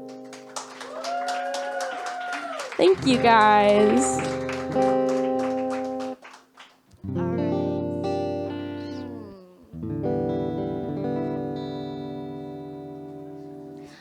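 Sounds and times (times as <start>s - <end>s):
guitar chords ringing: 0.0s - 0.6s, 2.8s - 6.2s, 6.9s - 14.0s
guitar notes sliding down: 3.0s - 6.2s, 7.0s - 14.0s.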